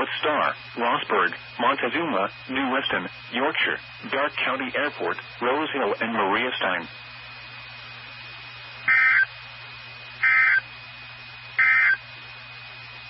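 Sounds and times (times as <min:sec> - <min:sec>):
radio hiss with faint hum: 0:00.0 - 0:13.0
digital data tone bursts: 0:08.9 - 0:09.3, 0:10.2 - 0:10.6, 0:11.6 - 0:12.0.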